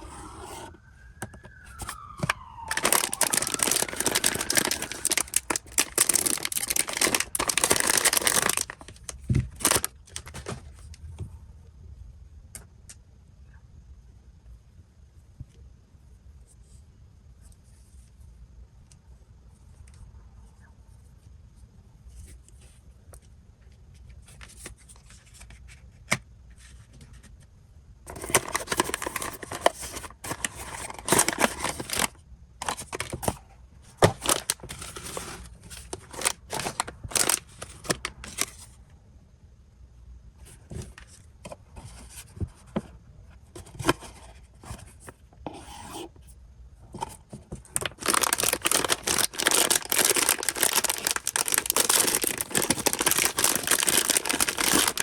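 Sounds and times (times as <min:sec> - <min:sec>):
packaging tearing and crinkling: 0:01.7 - 0:10.7, 0:28.1 - 0:33.4, 0:34.0 - 0:38.6, 0:47.8 - 0:55.0.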